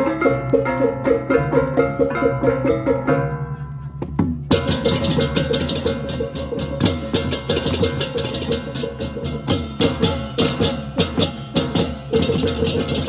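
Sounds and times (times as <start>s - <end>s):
drum strokes: 0.0s - 13.0s
ringing metallic tone: 0.0s - 13.0s
cymbals clashing rapidly: 4.5s - 13.0s.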